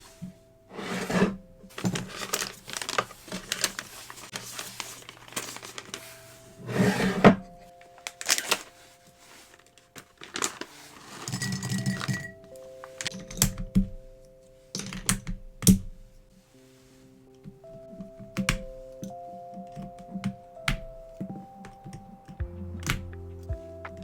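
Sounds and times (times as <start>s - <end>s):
plastic parts clicking and clattering: 1.7s - 6.1s, 7.3s - 8.8s, 9.5s - 14.0s, 14.8s - 16.0s.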